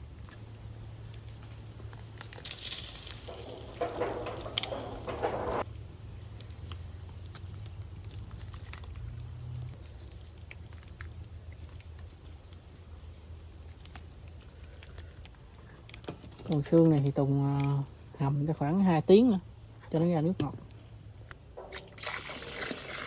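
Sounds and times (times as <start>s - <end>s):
broth bubbling and crackling: 0.0s - 16.1s, 21.6s - 23.0s
splashing crackly burst: 21.7s - 23.0s.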